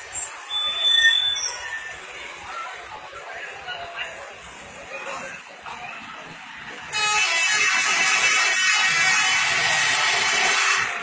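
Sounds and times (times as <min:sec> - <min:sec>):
traffic noise: 0:00.0 - 0:11.0
high-pitched bus horn: 0:06.9 - 0:11.0.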